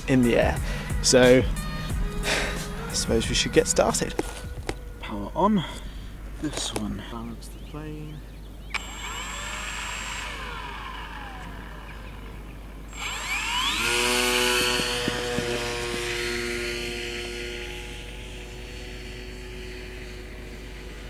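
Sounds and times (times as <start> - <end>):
electric motor and propeller whine: 0.0 - 6.9, 7.5 - 21.0.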